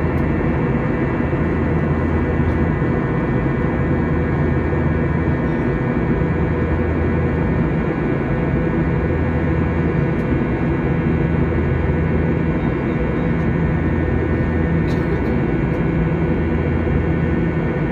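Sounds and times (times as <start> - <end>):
steady mechanical drone: 0.0 - 17.9.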